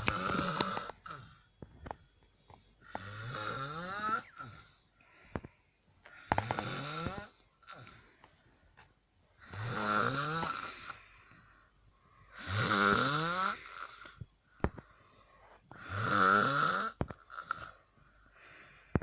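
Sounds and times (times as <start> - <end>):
girl snoring: 0.0 - 1.5, 2.9 - 4.9, 6.2 - 8.1, 9.4 - 11.1, 12.3 - 14.8, 15.7 - 17.8.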